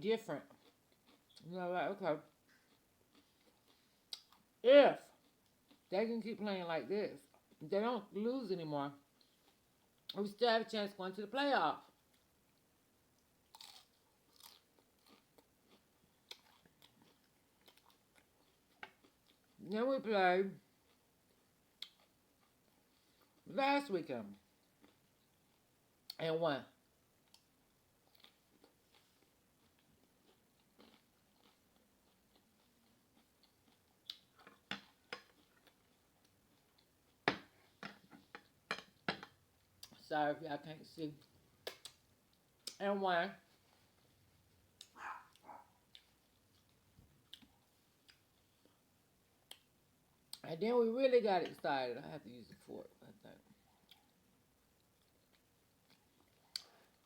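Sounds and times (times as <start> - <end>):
person chewing crunchy chips: 0.5 - 1.4, 13.4 - 19.6, 28.0 - 37.8.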